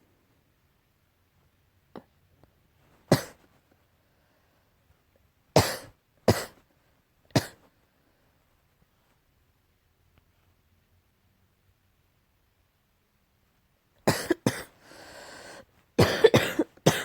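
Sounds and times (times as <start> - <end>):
person coughing: 3.1 - 3.4, 5.6 - 6.6, 7.4 - 7.7, 14.1 - 14.8, 16.0 - 17.0.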